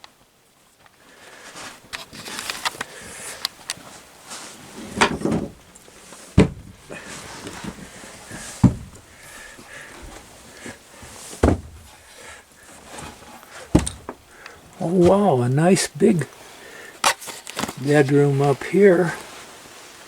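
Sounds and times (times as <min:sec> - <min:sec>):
footsteps on wooden stairs: 0:06.4 - 0:15.4.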